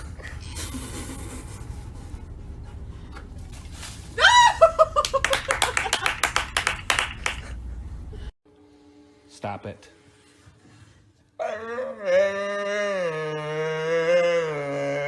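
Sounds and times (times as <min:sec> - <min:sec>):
slapping or clapping: 0:05.0 - 0:07.5.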